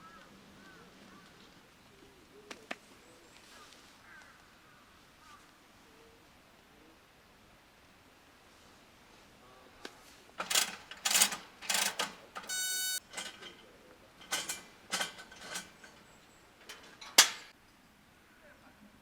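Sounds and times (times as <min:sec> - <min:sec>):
clattering handling noises: 0:10.4 - 0:17.5
steady beep: 0:12.5 - 0:13.0.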